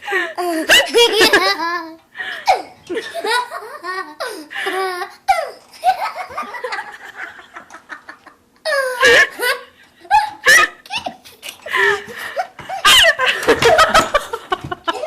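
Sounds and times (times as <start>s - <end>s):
girl laughing: 0.4s - 15.0s.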